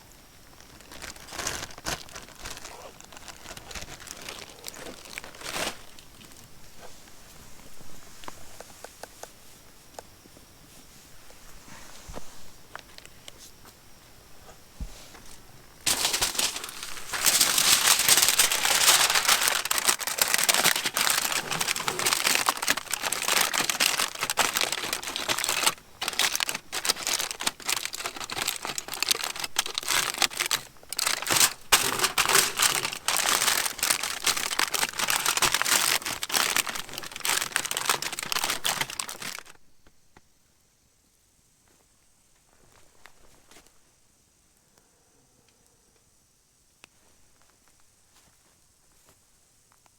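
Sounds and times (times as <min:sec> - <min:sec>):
bag crinkling and crumpling: 0:00.5 - 0:06.5, 0:15.8 - 0:39.6.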